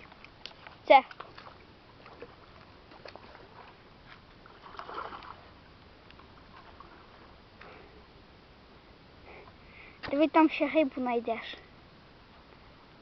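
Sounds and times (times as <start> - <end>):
water sloshing and lapping: 0.0 - 8.0.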